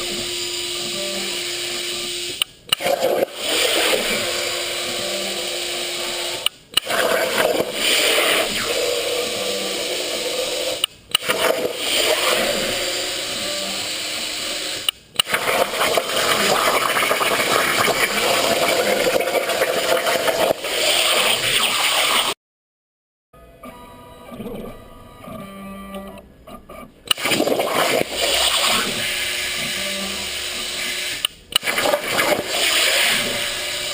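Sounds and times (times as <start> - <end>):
plasma cutter arc hissing: 1.2 - 22.4, 27.1 - 33.9
sharp crack of arc restarting: 27.1 - 29.6, 31.5 - 33.6.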